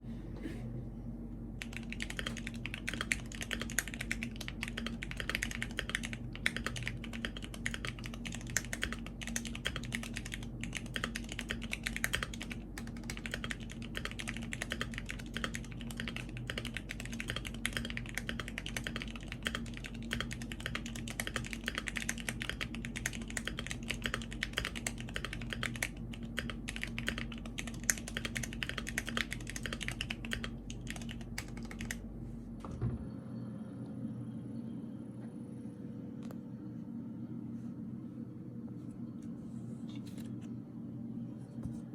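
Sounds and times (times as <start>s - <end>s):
low steady hum: 0.0s - 41.9s
mechanical keyboard typing: 1.6s - 32.0s.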